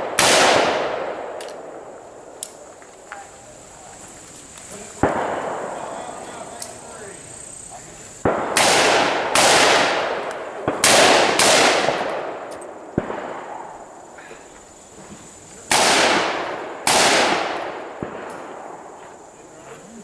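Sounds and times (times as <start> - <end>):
rifle shots echoing: 0.0 - 3.3, 4.7 - 7.3, 8.2 - 14.5, 15.6 - 19.4
short sharp cracks: 0.0 - 6.8.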